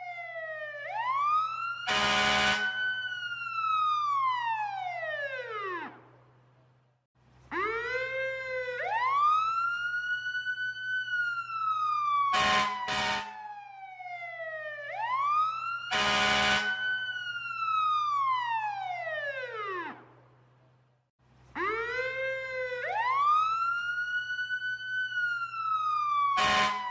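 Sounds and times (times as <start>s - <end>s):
fire truck siren wailing: 0.0s - 6.2s, 7.5s - 20.2s, 21.6s - 26.9s
fire truck horn blasts: 1.8s - 2.9s, 12.3s - 13.4s, 15.9s - 16.9s, 26.3s - 26.9s.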